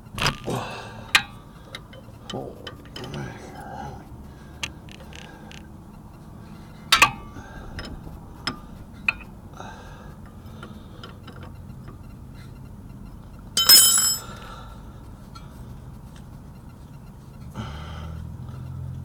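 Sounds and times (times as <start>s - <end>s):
ringing metallic clank: 13.6s - 14.3s
metal tools clinking: 13.6s - 14.4s.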